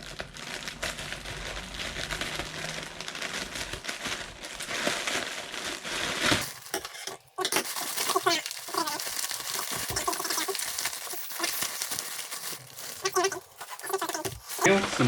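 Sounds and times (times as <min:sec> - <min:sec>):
mailing bag crinkling: 0:00.0 - 0:15.0.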